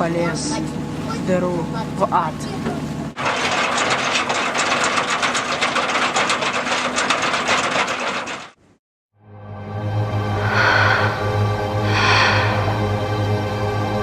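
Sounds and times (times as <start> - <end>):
rapid mechanical clicking clatter: 3.2 - 8.6.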